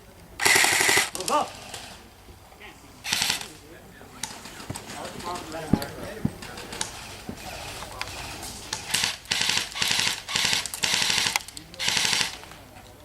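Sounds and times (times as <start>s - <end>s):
airsoft gun firing bursts: 0.4s - 1.9s, 3.1s - 3.5s, 8.7s - 12.6s.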